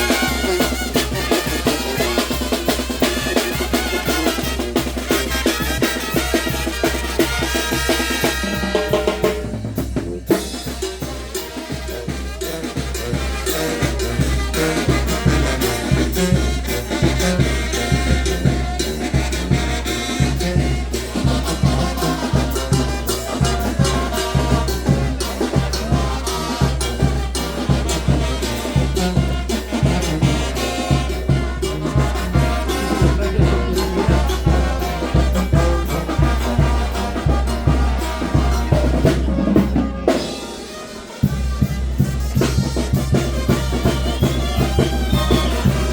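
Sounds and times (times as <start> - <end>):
brass band with drums playing: 0.0 - 45.9.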